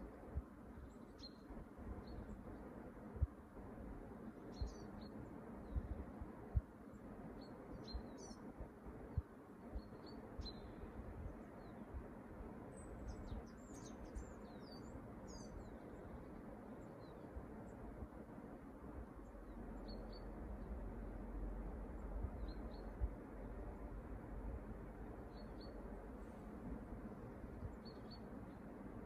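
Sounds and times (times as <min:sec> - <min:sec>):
low background rumble: 0:00.0 - 0:29.0
faint bird chirps: 0:00.7 - 0:02.8, 0:04.4 - 0:17.8, 0:19.2 - 0:20.8, 0:21.9 - 0:23.7, 0:25.1 - 0:26.0, 0:27.5 - 0:29.0.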